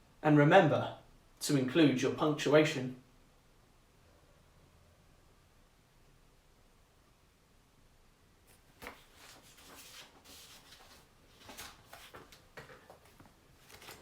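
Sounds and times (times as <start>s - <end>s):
paper scratching and rustling: 8.5s - 12.4s, 13.1s - 14.0s.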